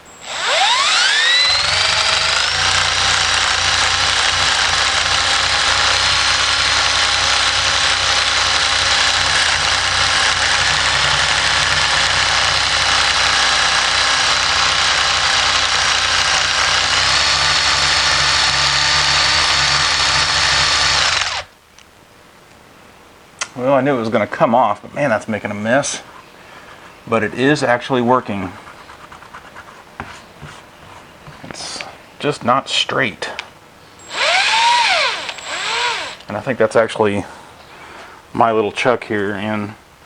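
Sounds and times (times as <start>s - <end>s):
electric driver motor whine: 0.2s - 21.5s, 34.0s - 36.3s.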